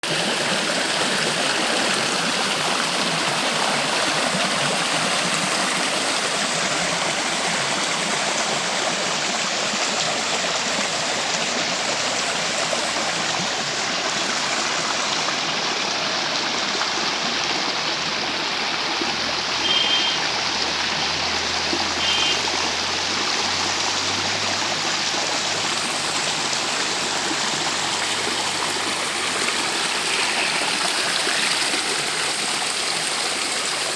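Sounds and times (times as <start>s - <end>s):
stream water rushing: 0.0s - 33.9s
short high chirps: 19.6s - 20.2s.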